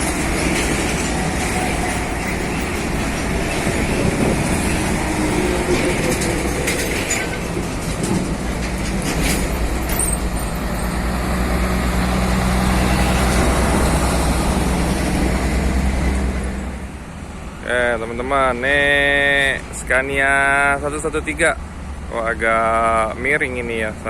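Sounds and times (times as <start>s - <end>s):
sharp rattles and clanks: 0.0s - 11.1s
diesel truck engine driving past: 0.0s - 24.0s.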